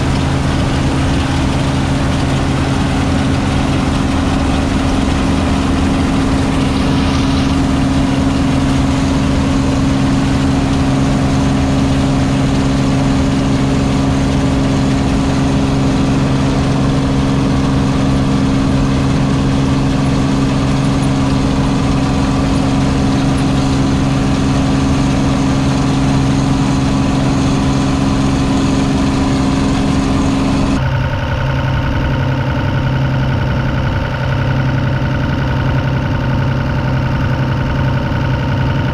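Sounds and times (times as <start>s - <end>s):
combine harvester droning: 0.0s - 38.9s.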